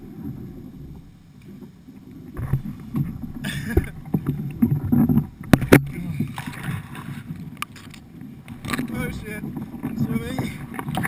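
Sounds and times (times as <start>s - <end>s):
water splashing and sloshing: 0.0s - 11.0s
low rumbling knocks on microphone: 2.4s - 6.2s.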